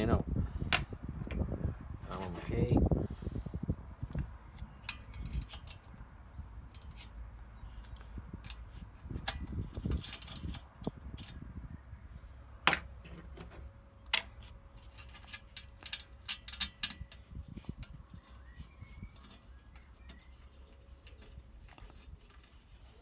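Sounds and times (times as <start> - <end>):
small clicks and knocks of parts: 4.0 - 6.0, 6.6 - 11.4, 12.6 - 23.0.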